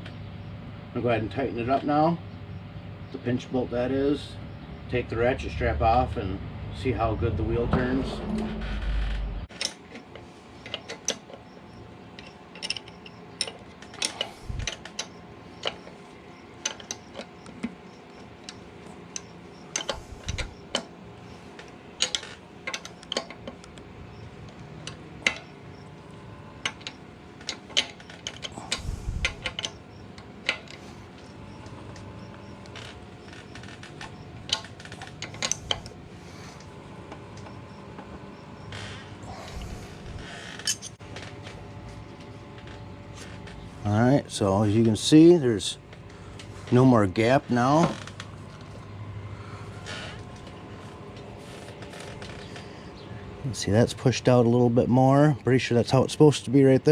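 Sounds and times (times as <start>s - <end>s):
ratchet clicks: 16.6s - 20.9s, 24.5s - 25.9s, 26.6s - 35.9s
metal clinks: 40.6s - 41.0s.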